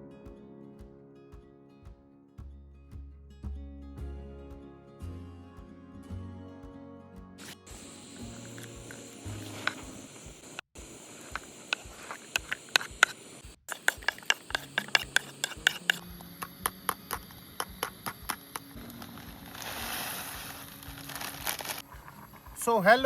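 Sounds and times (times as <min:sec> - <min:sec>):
campfire crackling: 0:07.4 - 0:23.0.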